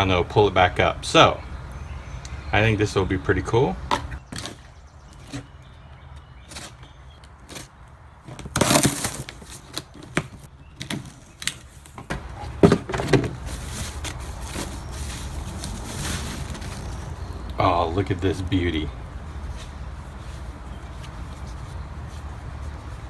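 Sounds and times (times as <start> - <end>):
cardboard and wrapping rustling: 4.2 - 18.0, 18.6 - 23.0.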